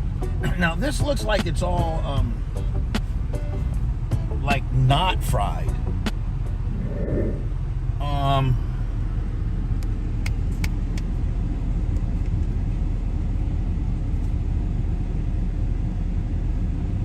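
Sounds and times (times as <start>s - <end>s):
pickup engine rumbling: 0.1s - 8.0s.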